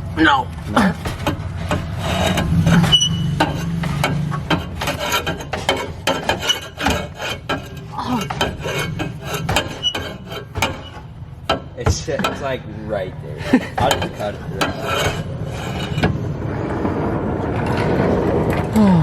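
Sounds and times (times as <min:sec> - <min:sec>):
hand saw cutting metal pipe: 0:00.6 - 0:12.6, 0:13.3 - 0:16.2.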